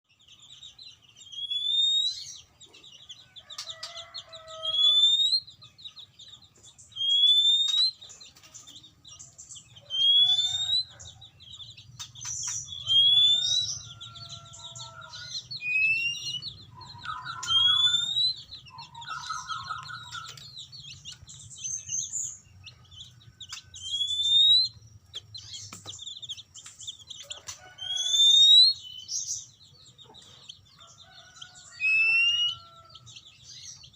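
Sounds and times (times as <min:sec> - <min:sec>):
bird chattering and warbling: 0:00.2 - 0:33.9
bird rising whistle: 0:04.4 - 0:05.5, 0:07.0 - 0:07.9, 0:09.9 - 0:11.0, 0:12.8 - 0:20.4, 0:23.8 - 0:24.8, 0:27.8 - 0:28.8.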